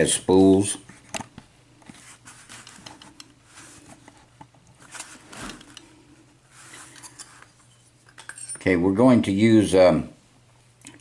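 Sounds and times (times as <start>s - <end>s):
small handling clicks and rustles: 0.9s - 6.0s.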